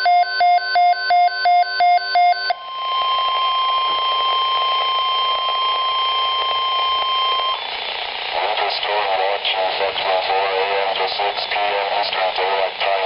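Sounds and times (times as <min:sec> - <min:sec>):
steady warning alarm tone: 0:00.0 - 0:08.4
rapid electronic beeps: 0:00.0 - 0:13.0
radio hiss: 0:03.0 - 0:13.0.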